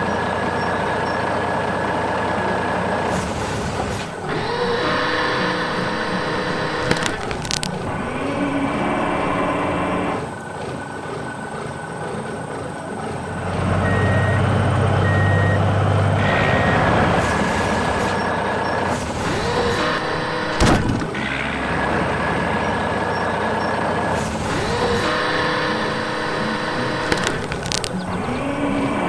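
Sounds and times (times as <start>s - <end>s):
heavy diesel machinery running: 0.0s - 29.0s
reversing alarm beeping: 4.2s - 10.3s, 13.7s - 29.0s.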